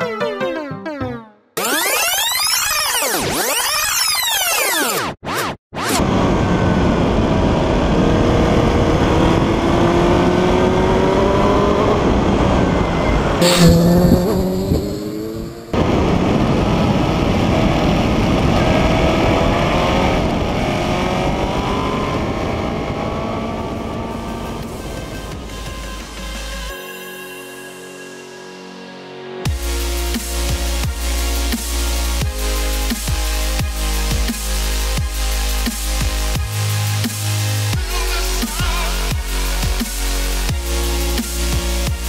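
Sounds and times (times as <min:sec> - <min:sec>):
motorcycle engine accelerating: 0:06.9 - 0:24.7
loud rushing burst: 0:13.4 - 0:15.9.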